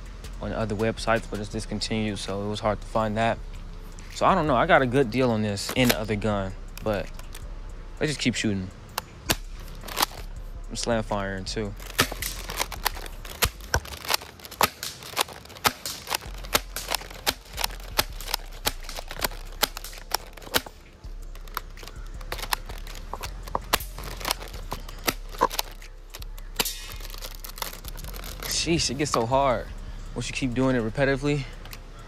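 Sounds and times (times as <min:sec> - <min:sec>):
airsoft shotgun pump clacking: 0:05.6 - 0:07.5, 0:08.9 - 0:10.3, 0:11.8 - 0:29.3
spring shot snapping: 0:09.3 - 0:10.3, 0:11.9 - 0:20.8, 0:26.6 - 0:27.0.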